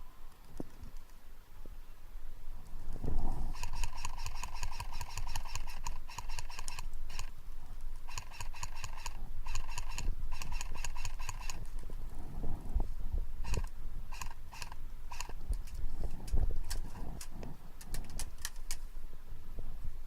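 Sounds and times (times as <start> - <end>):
airsoft gun firing bursts: 3.5 - 7.3, 8.1 - 11.7, 13.4 - 15.4.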